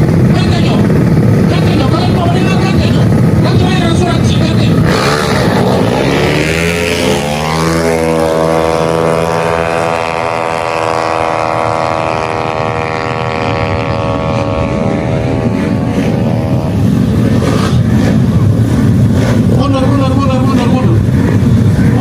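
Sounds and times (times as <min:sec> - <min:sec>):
scooter engine at full throttle: 0:00.0 - 0:22.0.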